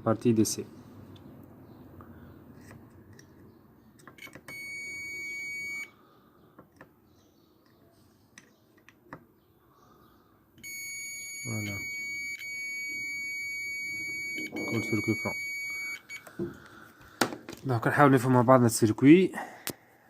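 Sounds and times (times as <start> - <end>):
multimeter continuity beep: 4.2 - 6.0, 10.6 - 16.4.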